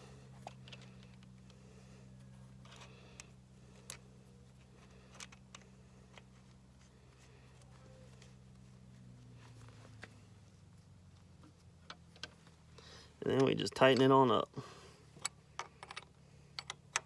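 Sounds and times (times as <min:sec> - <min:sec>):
steady low hum: 0:00.0 - 0:17.0
small parts clicking and tapping: 0:02.2 - 0:06.6, 0:15.2 - 0:17.0.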